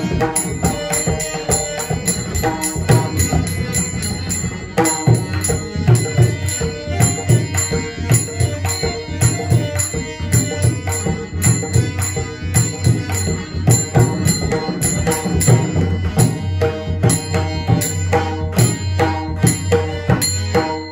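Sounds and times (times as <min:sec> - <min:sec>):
hand drum strokes: 0:00.0 - 0:16.4
small hand cymbals: 0:00.0 - 0:20.9.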